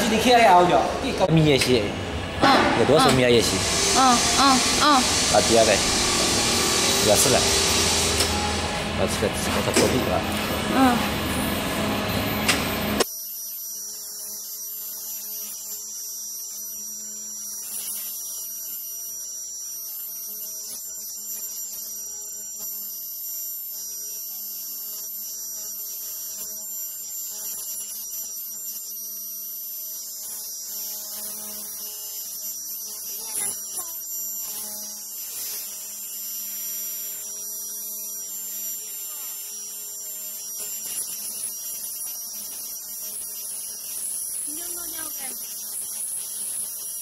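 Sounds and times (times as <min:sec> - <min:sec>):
electrical hum: 0:00.0 - 0:15.8.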